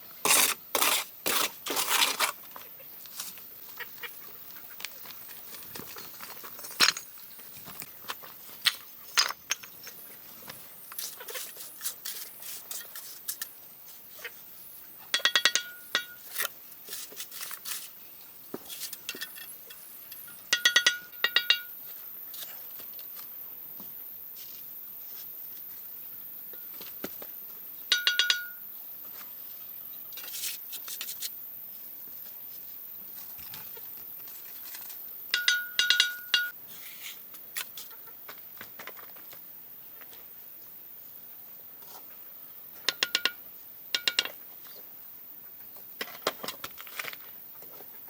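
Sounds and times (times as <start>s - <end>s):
ringing metallic clinks: 15.2s - 16.2s, 19.3s - 21.7s, 27.9s - 28.6s, 35.4s - 36.6s.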